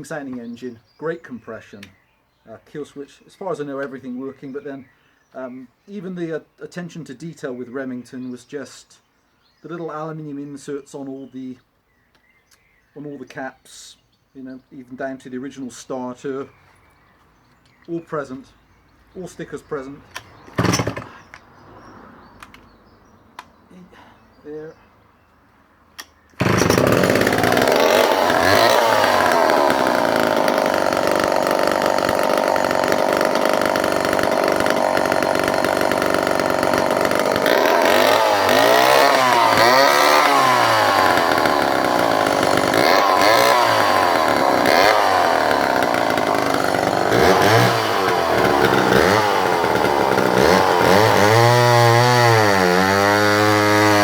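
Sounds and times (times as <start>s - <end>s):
chainsaw cutting timber: 20.5s - 21.3s, 26.4s - 54.0s.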